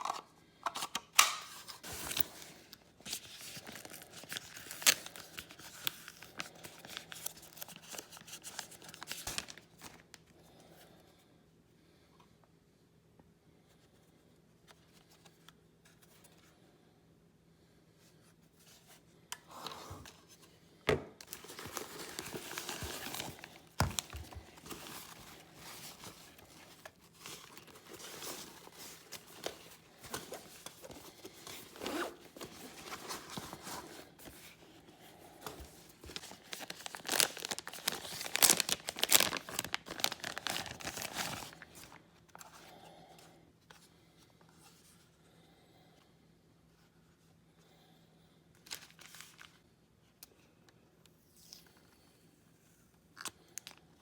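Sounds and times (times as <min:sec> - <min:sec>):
packaging crinkling and tearing: 0:00.0 - 0:10.2, 0:21.2 - 0:34.6, 0:35.5 - 0:42.5, 0:48.6 - 0:49.6, 0:53.2 - 0:53.8.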